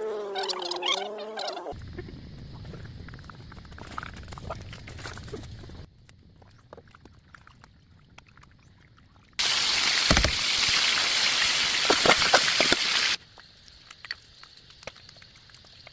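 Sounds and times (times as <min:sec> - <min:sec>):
water rushing and splashing: 0:06.4 - 0:13.2
faint ticks and clicks: 0:13.2 - 0:15.9.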